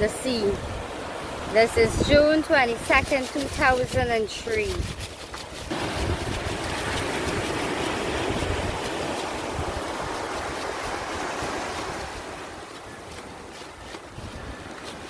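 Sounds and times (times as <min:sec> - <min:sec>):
wind rumbling on microphone: 0:00.0 - 0:15.0
sea surf breaking: 0:05.6 - 0:15.0.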